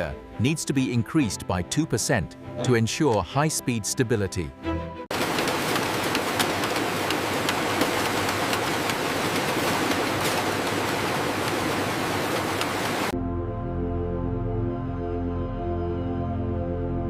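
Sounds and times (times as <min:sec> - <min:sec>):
music: 0:00.0 - 0:05.1, 0:13.1 - 0:17.0
steady rushing hiss: 0:05.1 - 0:13.1.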